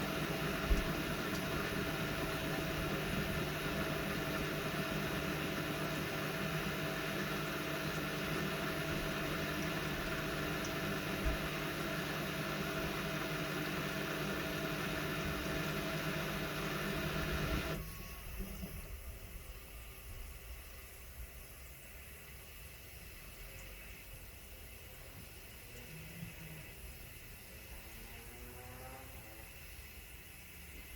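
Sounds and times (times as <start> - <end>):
washing machines spinning: 0.0 - 25.9.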